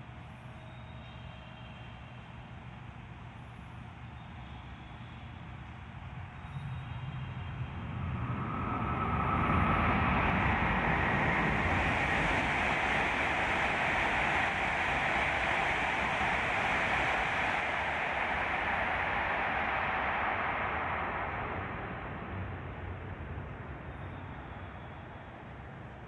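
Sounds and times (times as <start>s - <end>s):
high-speed train running by: 0.0s - 26.0s.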